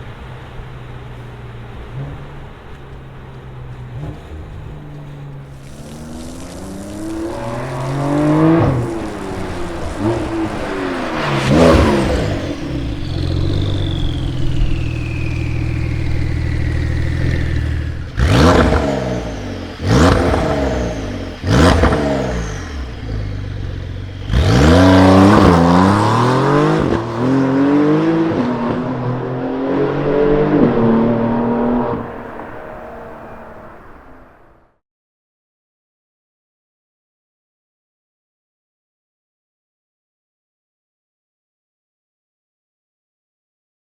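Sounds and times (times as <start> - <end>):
sports car engine revving: 0.3 - 34.0
turbo whistle: 12.9 - 18.0.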